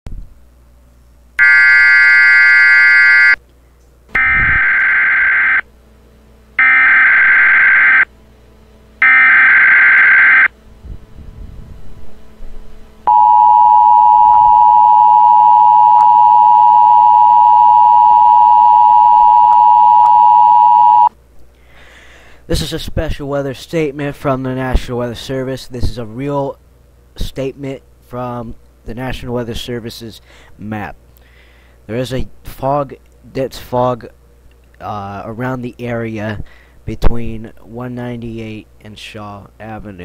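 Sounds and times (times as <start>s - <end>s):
electronic tone burst: 1.4s - 3.4s, 4.1s - 5.7s, 6.6s - 8.1s, 9.0s - 10.5s, 13.1s - 21.1s
harsh screeching data bursts: 1.4s - 3.4s, 4.2s - 5.6s, 6.6s - 8.0s, 9.0s - 10.5s
steady single-pitched attention tone: 1.4s - 3.4s, 4.1s - 5.6s, 6.6s - 8.1s, 9.0s - 10.5s, 13.1s - 21.1s.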